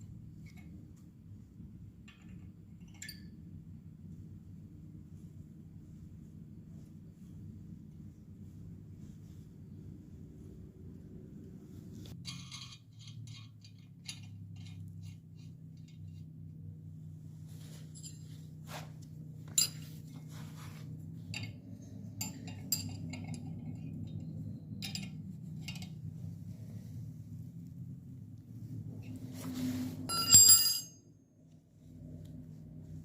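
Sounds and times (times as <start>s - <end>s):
steady low hum: 0.0s - 12.2s, 13.6s - 33.0s
metallic clinks and taps: 2.0s - 3.4s, 17.8s - 18.4s, 19.4s - 20.0s, 22.2s - 26.0s, 30.1s - 31.0s.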